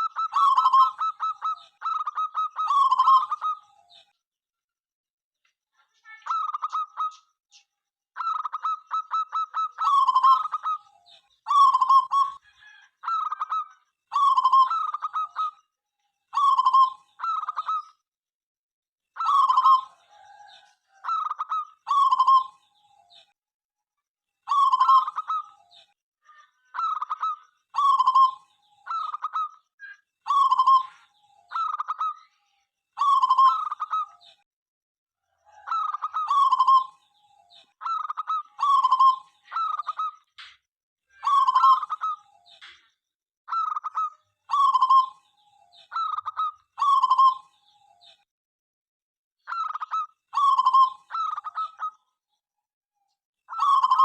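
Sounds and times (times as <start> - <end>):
dove cooing: 0.0 - 3.8, 8.2 - 10.8, 11.5 - 15.6, 19.2 - 22.6, 24.5 - 25.7, 26.8 - 29.5, 30.3 - 32.2, 35.3 - 37.0, 37.8 - 40.2, 41.2 - 42.3, 43.5 - 45.2, 45.9 - 47.5, 49.5 - 52.0, 53.5 - 54.0.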